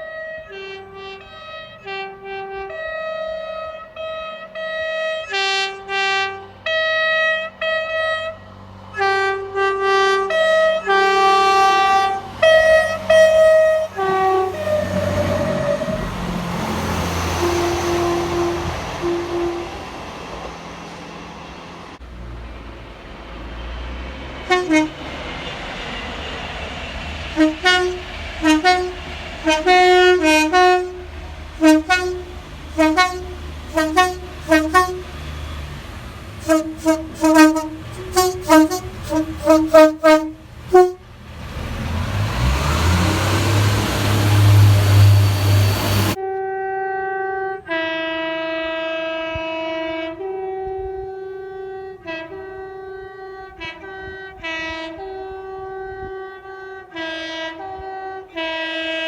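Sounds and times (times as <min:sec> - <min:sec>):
train horn two-tone toots: 0:00.0 - 0:20.6, 0:24.4 - 0:25.2, 0:27.3 - 0:35.6, 0:36.4 - 0:41.1, 0:42.7 - 0:59.0
train horn alternating notes: 0:00.0 - 0:22.2, 0:23.5 - 0:26.1, 0:27.2 - 0:59.0
rush with rising low drone: 0:11.5 - 0:38.2.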